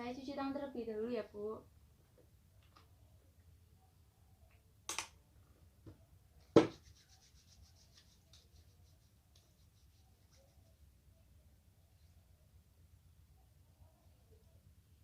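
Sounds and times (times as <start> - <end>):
hands rubbing together: 6.6 - 10.8.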